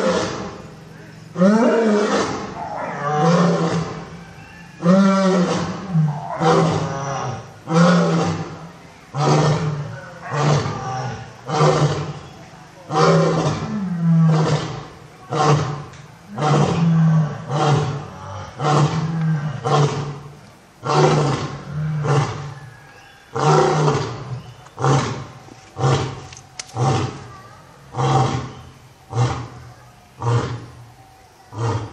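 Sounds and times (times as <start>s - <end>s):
lion roaring: 1.3s - 4.2s, 4.8s - 12.2s, 12.9s - 22.6s.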